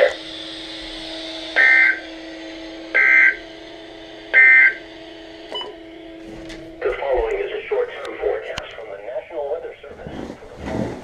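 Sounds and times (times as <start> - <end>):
steady low hum: 0.0 - 11.0
buzzy two-tone data bursts: 1.4 - 2.2, 2.9 - 3.6, 4.3 - 4.9.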